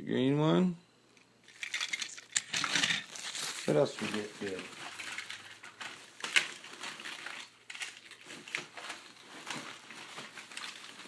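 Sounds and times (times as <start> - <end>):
toy trains clicking and knocking: 1.4 - 3.2
packaging crinkling and rustling: 1.5 - 11.0.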